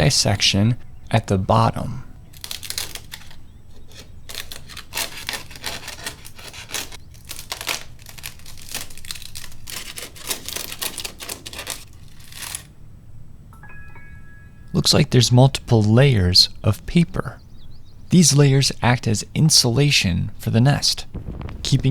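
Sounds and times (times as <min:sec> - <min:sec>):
papery wasp nest tearing: 0:02.3 - 0:12.7.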